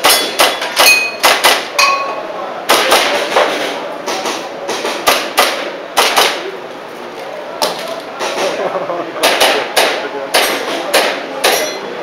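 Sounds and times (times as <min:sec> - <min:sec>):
short metallic ring: 0:00.1 - 0:01.2, 0:01.8 - 0:02.2.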